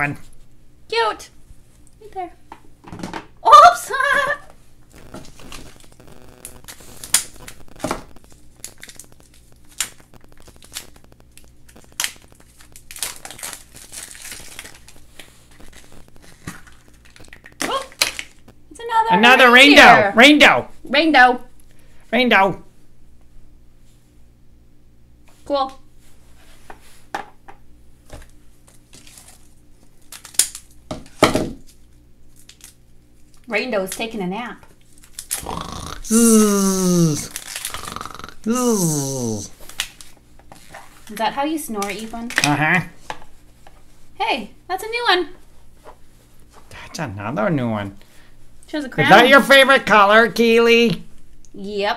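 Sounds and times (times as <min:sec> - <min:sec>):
plastic packaging rustling: 0:04.9 - 0:18.4, 0:28.2 - 0:30.8, 0:37.3 - 0:38.1
plastic wrapper crinkling and tearing: 0:04.9 - 0:18.6, 0:28.6 - 0:30.8, 0:32.3 - 0:33.5, 0:34.8 - 0:36.0, 0:37.2 - 0:38.3, 0:39.5 - 0:41.2.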